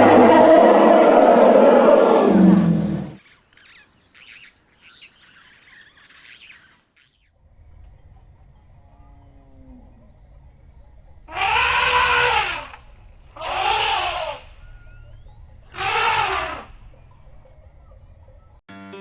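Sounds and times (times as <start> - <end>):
elephant call: 0.0 - 3.2, 8.9 - 18.6
faint bird chirps: 3.2 - 18.6.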